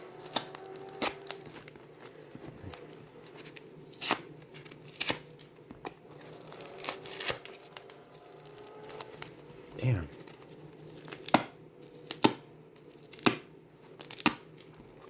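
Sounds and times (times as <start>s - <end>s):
packaging crinkling and tearing: 0.1s - 9.4s.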